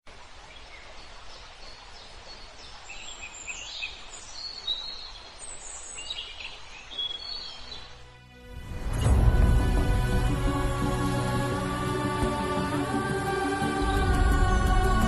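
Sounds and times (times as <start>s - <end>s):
outdoor background noise: 0.0s - 10.2s.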